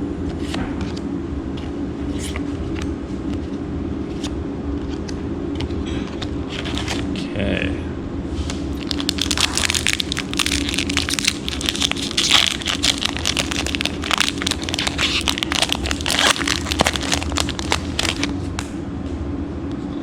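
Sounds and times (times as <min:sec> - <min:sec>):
steady low hum: 0:00.0 - 0:20.0
playing cards being handled: 0:01.6 - 0:07.2, 0:08.4 - 0:18.8
foil wrapper crinkling: 0:06.5 - 0:07.1, 0:08.7 - 0:18.6.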